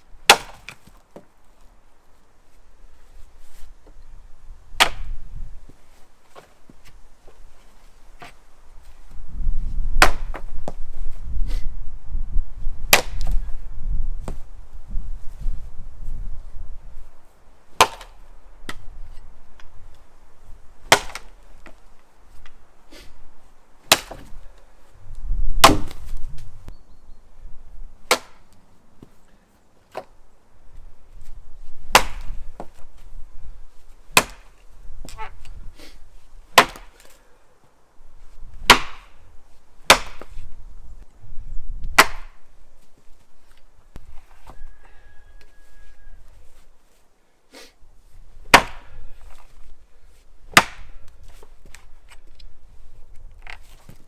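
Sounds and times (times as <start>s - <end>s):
axe chopping wood: 0.2s - 1.2s, 4.8s - 5.2s, 10.0s - 10.8s, 12.9s - 13.5s, 17.7s - 18.9s, 20.8s - 21.8s, 23.9s - 24.5s, 25.6s - 26.4s, 28.0s - 29.2s, 29.9s - 30.2s, 31.9s - 32.9s, 34.1s - 35.5s, 36.5s - 37.2s, 38.6s - 39.2s, 39.8s - 40.5s, 41.8s - 42.5s, 48.4s - 49.5s, 50.5s - 51.9s.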